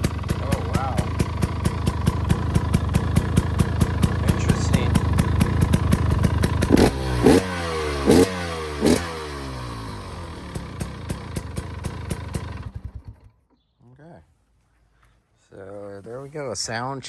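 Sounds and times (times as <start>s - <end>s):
engine revving: 0.0s - 13.3s
two-stroke engine idling: 0.0s - 13.3s.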